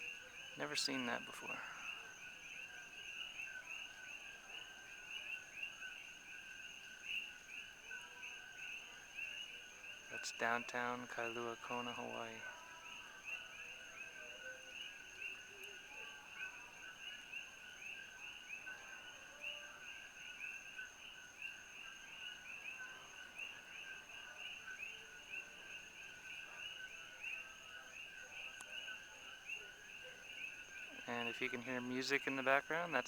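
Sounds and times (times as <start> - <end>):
coqui frogs calling: 0.0 - 33.0.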